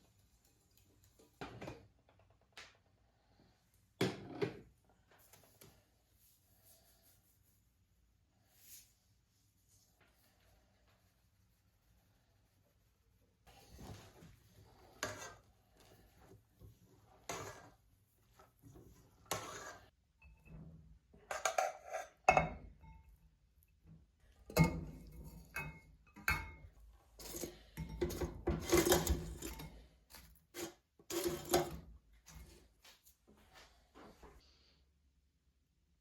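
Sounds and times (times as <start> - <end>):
dishes and cutlery clattering: 21.2 - 23.1, 24.5 - 29.8, 30.6 - 31.8.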